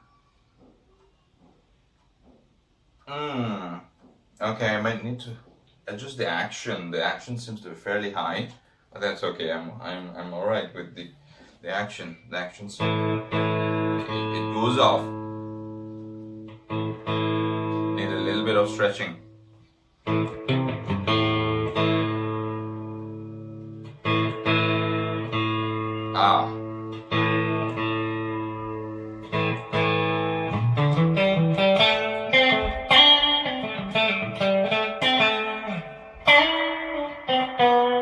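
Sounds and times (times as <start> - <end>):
electric guitar strummed chords: 12.8 - 19.4, 20.0 - 38.0
electric guitar single-note licks: 12.8 - 38.0.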